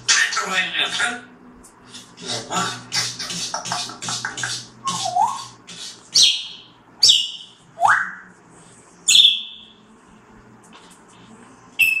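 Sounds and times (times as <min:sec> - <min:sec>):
parrot calling: 0:02.2 - 0:08.2, 0:09.1 - 0:09.7
high parrot whistle: 0:06.2 - 0:08.3, 0:09.1 - 0:09.7, 0:11.8 - 0:12.0.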